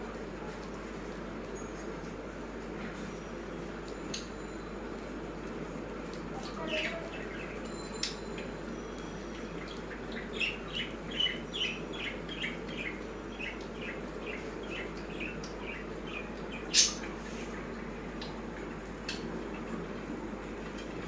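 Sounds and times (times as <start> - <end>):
pet birds chirping: 6.3 - 8.2, 9.3 - 17.5.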